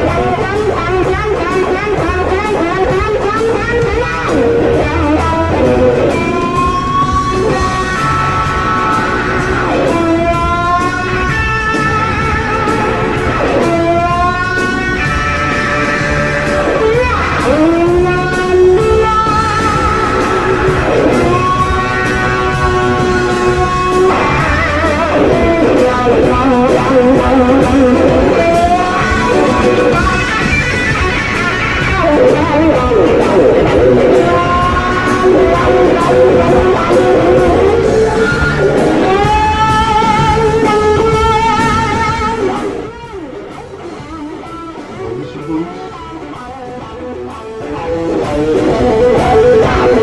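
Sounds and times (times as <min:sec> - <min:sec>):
electric blues guitar with bends: 0:00.0 - 0:50.0.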